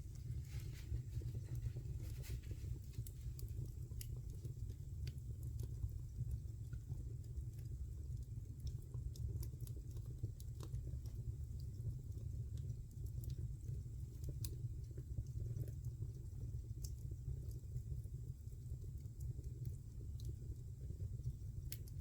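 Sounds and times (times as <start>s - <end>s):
fire flames rumbling: 0.0s - 22.0s.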